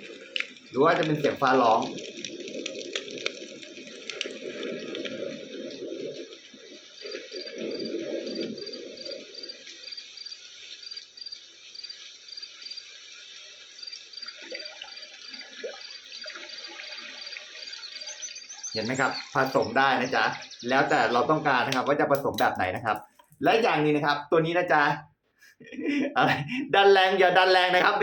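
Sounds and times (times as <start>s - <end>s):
rain hiss: 0.0s - 28.0s
high chirps: 15.3s - 24.2s.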